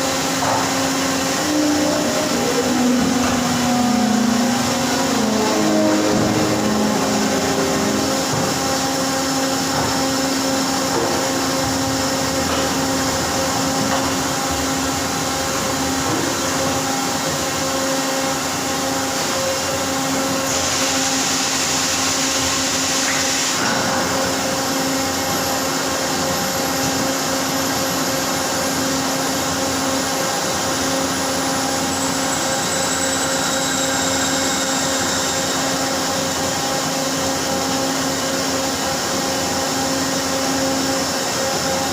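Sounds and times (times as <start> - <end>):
factory machinery humming: 0.0 - 41.9
hiss: 20.4 - 24.1.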